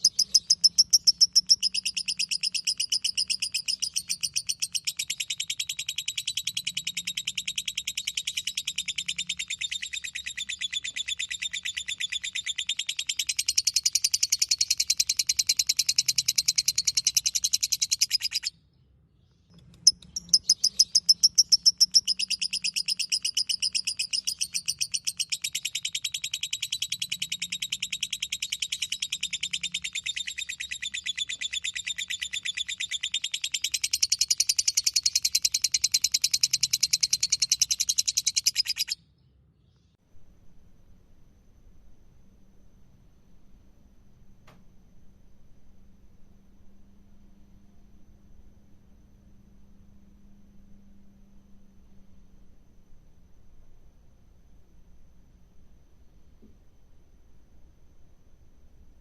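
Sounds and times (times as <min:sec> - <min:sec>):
bird chattering trill: 0:00.0 - 0:18.5, 0:19.6 - 0:39.0.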